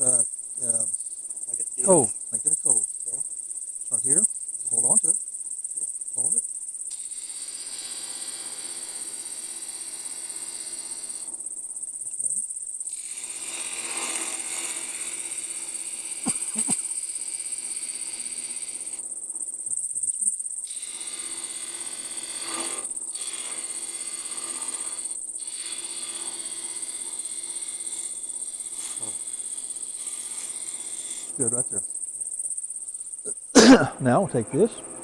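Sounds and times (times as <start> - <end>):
wood lathe whining: 6.9 - 11.3, 12.9 - 19.0, 20.6 - 31.4
tool cutting spinning wood: 6.9 - 11.4, 12.9 - 19.0, 20.6 - 31.6.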